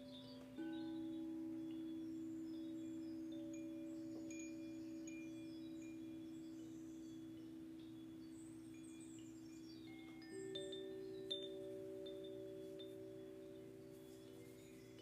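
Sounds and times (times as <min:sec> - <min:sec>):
singing bowl ringing: 0:00.0 - 0:15.0
wind chimes tinkling: 0:00.0 - 0:15.0.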